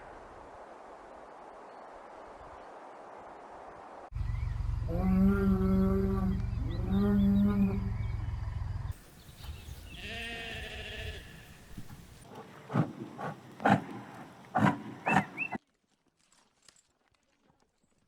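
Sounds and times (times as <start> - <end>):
low steady rumble: 4.1 - 9.0
long animal calls: 4.6 - 8.6, 12.7 - 15.6.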